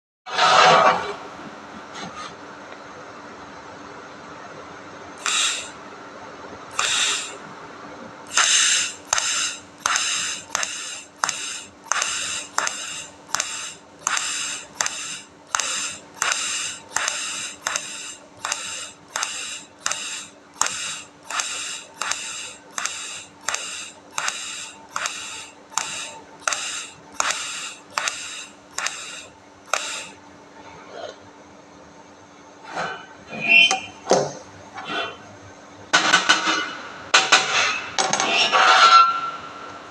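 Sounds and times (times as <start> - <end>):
steady low hum: 0.3 - 39.9
welding arc crackling hiss: 5.2 - 5.8, 6.7 - 7.4, 8.3 - 30.2.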